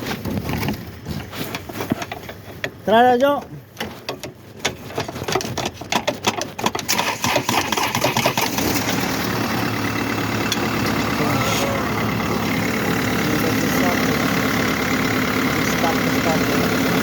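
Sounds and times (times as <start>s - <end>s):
car engine cranking: 0.0s - 17.0s
car engine idling: 6.8s - 17.0s.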